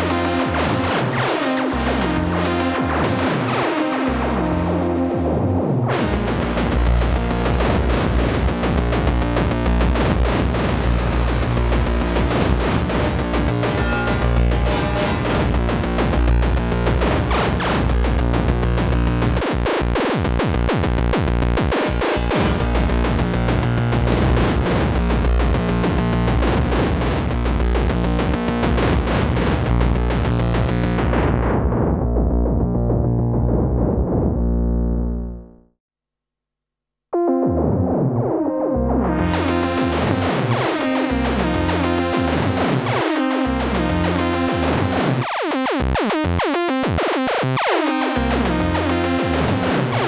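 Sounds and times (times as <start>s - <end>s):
electronic percussion: 6.0s - 31.0s.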